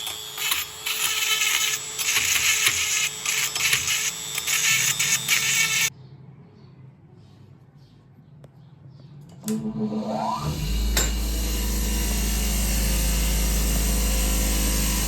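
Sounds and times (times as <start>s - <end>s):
power tool rasping whir: 0.0s - 5.9s, 9.8s - 15.0s.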